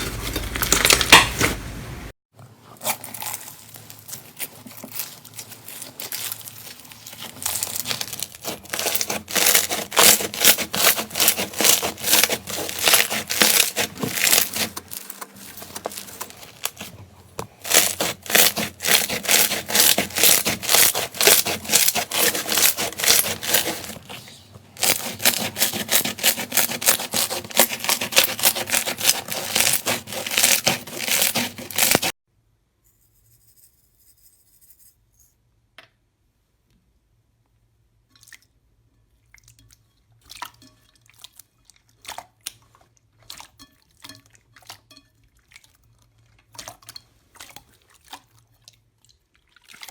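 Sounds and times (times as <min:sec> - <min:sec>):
slime crackling and popping: 0:02.9 - 0:16.9, 0:17.6 - 0:24.0, 0:24.8 - 0:32.1.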